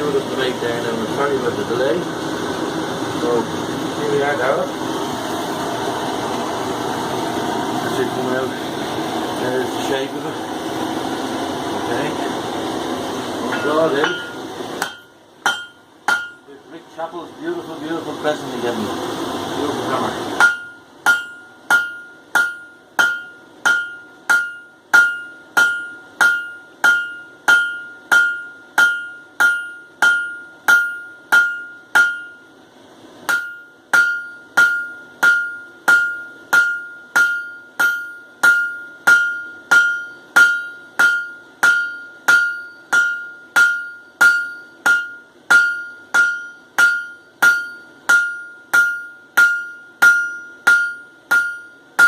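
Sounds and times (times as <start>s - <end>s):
hammer striking steel on anvil: 13.5s - 16.5s, 20.4s - 32.5s, 33.2s - 52.0s.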